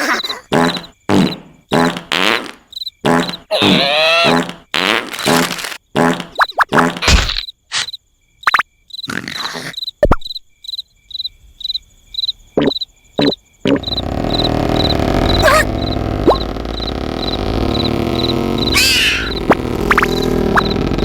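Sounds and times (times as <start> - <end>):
insect chirping: 0.0 - 21.0
steady rumbling noise: 13.8 - 21.0.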